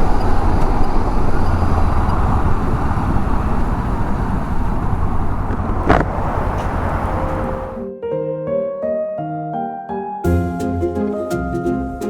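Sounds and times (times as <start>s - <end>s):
wind and road rush: 0.0s - 7.9s.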